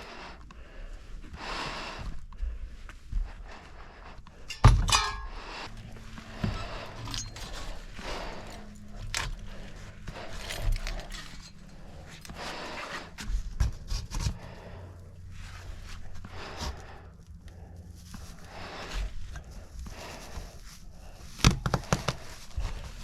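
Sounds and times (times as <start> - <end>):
knocks and handling noises: 4.4 - 14.5, 21.3 - 23.0
sharp metallic clank ringing: 4.5 - 5.7.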